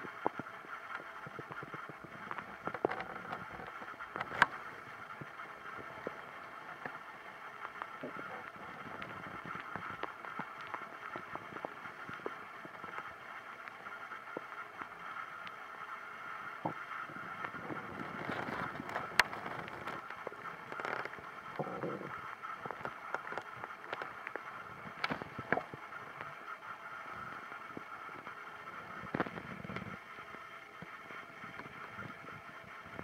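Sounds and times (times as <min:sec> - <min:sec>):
steady hiss: 0:00.0 - 0:33.0
stomach gurgling: 0:00.0 - 0:33.0
small clicks: 0:00.2 - 0:15.6, 0:17.4 - 0:26.5.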